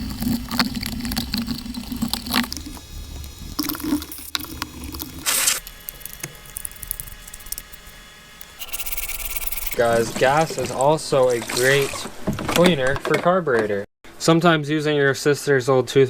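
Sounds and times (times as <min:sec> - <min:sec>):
liquid squishing and dripping: 0:00.0 - 0:07.9
toothbrush scrubbing: 0:00.0 - 0:10.7.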